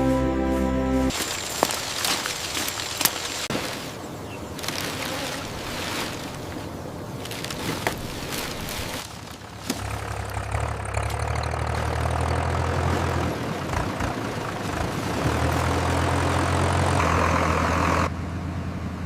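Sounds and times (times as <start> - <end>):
vehicle engine humming: 0.0 - 3.5, 9.0 - 19.0.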